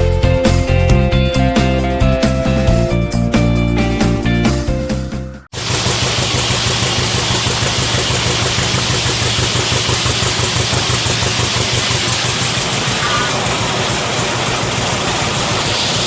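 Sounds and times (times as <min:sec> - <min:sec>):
two-cylinder engine running steadily: 0:05.5 - 0:16.0.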